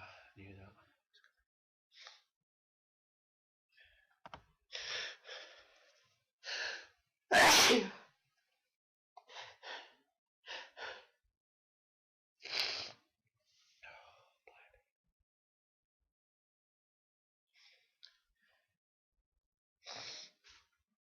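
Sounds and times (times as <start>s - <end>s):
person sneezing: 7.3s - 8.0s.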